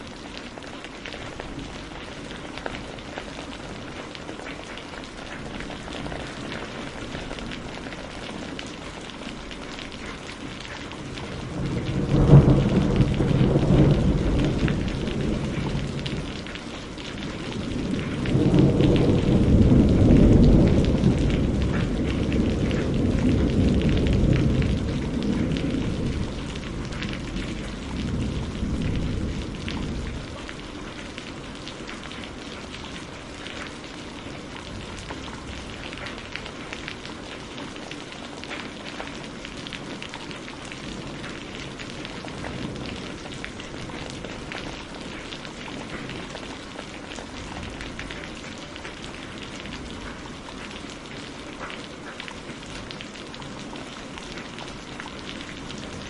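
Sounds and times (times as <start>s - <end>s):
steady rain falling: 0.0s - 56.0s
thunder rumble: 10.3s - 37.0s.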